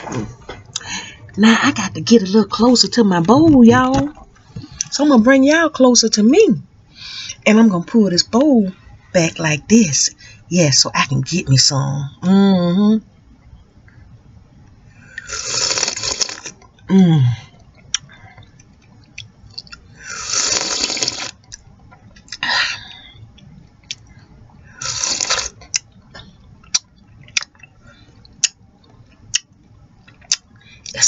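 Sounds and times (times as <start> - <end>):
slurping soup: 15.2 - 16.6, 20.1 - 21.5, 24.8 - 25.7
low throat sound: 15.2 - 17.5.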